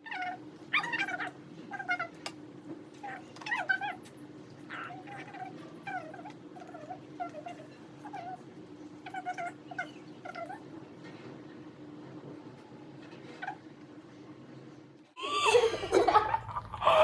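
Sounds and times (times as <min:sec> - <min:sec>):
steady low hum: 0:15.2 - 0:17.0.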